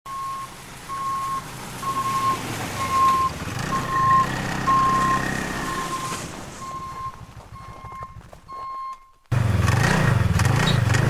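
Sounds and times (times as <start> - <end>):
reverse warning beeper: 0.1 - 9.2
snowmobile engine revving: 0.8 - 7.6, 9.3 - 11.0.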